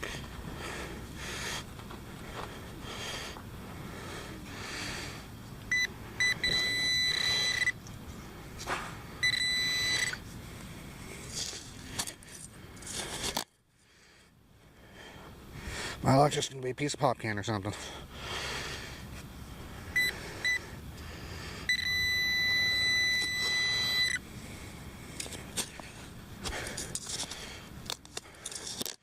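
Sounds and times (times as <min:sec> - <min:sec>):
metal detector pinpointer beeping: 0:05.7 - 0:07.8, 0:09.2 - 0:10.2, 0:20.0 - 0:20.6, 0:21.7 - 0:24.2
digging in soil: 0:11.0 - 0:13.5.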